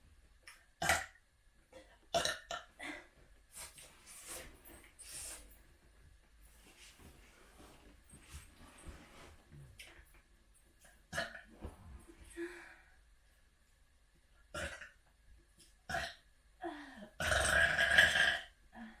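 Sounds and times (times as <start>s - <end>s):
person burping: 2.1s - 2.7s, 15.9s - 16.2s, 17.2s - 18.5s.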